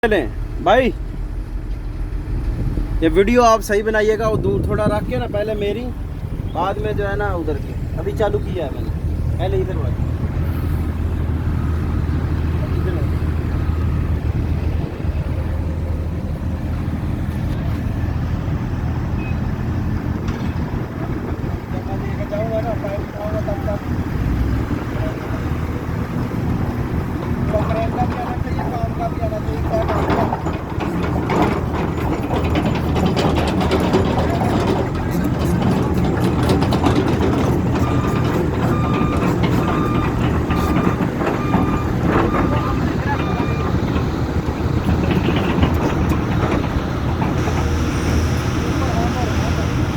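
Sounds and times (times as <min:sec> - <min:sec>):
crane engine humming: 0:00.0 - 0:49.9
warning beeper: 0:37.8 - 0:43.8.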